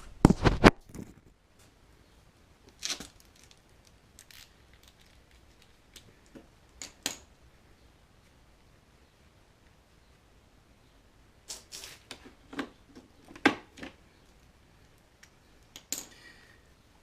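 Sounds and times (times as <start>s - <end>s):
scraping or rubbing: 11.5s - 12.2s.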